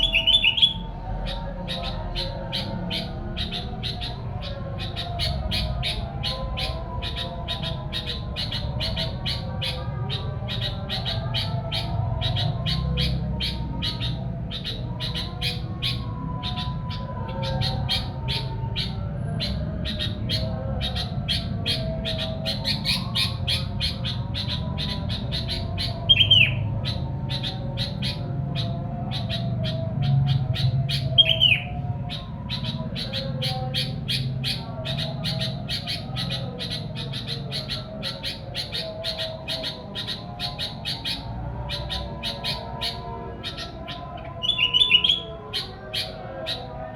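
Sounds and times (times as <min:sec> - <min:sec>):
bird chirping: 0:00.0 - 0:46.9.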